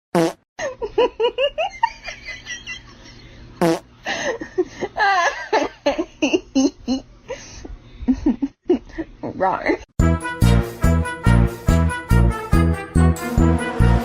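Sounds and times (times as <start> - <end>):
person laughing: 0.6 - 3.2, 4.1 - 7.1, 8.0 - 9.2.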